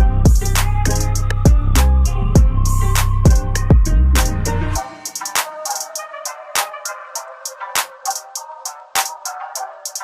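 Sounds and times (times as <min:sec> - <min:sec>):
hip hop music: 0:00.0 - 0:10.0.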